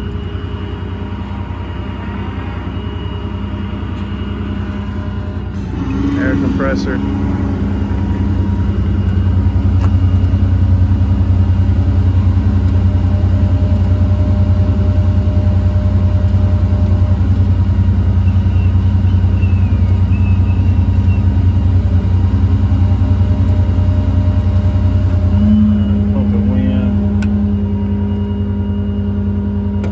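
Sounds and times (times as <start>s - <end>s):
diesel engine running: 0.0s - 29.9s
air compressor pumping: 5.5s - 28.4s.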